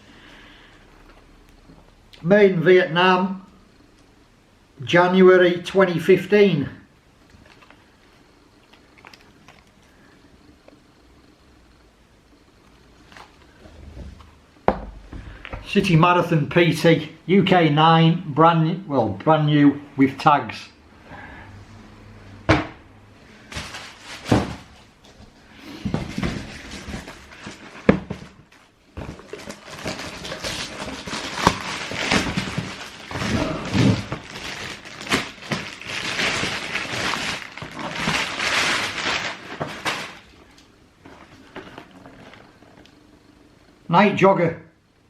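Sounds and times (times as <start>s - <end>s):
crackly paper rustling: 7.2s - 10.8s, 12.6s - 14.4s, 23.4s - 42.6s.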